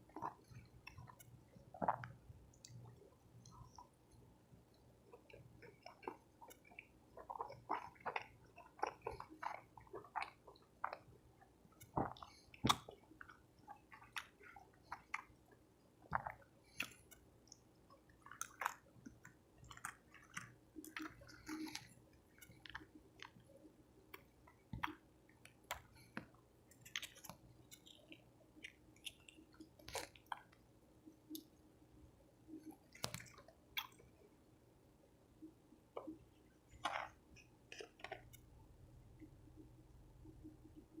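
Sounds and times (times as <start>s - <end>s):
person chewing: 0.0s - 4.0s, 5.1s - 11.1s, 11.8s - 15.5s, 16.1s - 23.5s, 24.1s - 30.6s, 32.7s - 34.1s, 36.0s - 38.5s.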